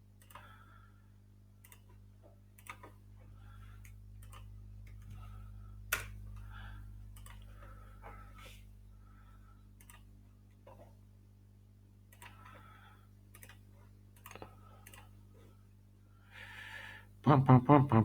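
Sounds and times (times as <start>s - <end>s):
low electrical hum: 0.0s - 18.0s
computer mouse clicking: 0.2s - 0.5s, 1.6s - 3.0s, 3.8s - 5.2s, 7.1s - 7.7s, 9.8s - 11.0s, 12.1s - 12.6s, 13.3s - 15.2s.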